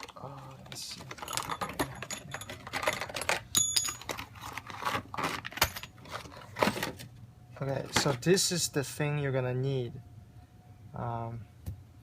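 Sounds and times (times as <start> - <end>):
hard pieces knocking with ring: 1.0 - 4.3
packaging rustling: 2.5 - 7.1.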